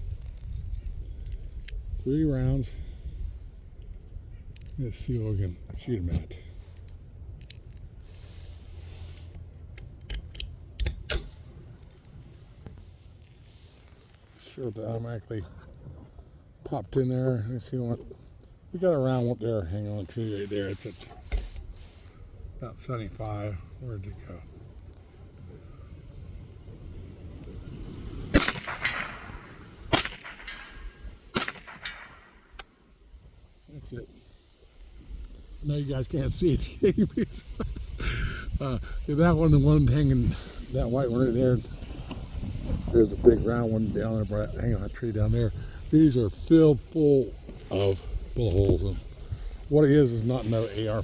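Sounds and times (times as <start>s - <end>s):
wind rumbling on microphone: 0.0s - 14.0s, 20.2s - 51.0s
rifle handling clicks: 6.8s - 7.9s, 9.2s - 12.1s, 28.4s - 29.2s, 29.9s - 32.8s
sharp rifle clacks: 10.1s - 11.4s, 28.4s - 32.8s.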